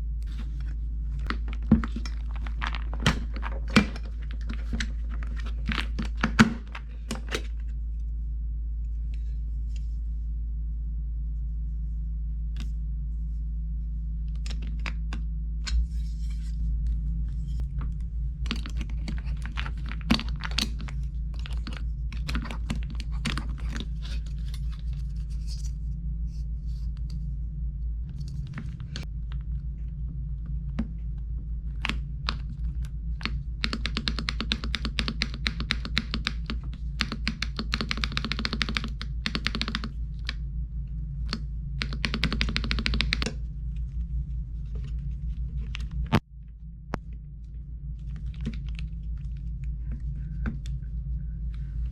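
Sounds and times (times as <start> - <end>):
low hum: 0.0 - 51.9
plastic keycaps clicking and scraping: 0.2 - 7.7, 18.5 - 25.3, 31.8 - 40.4, 41.2 - 43.4.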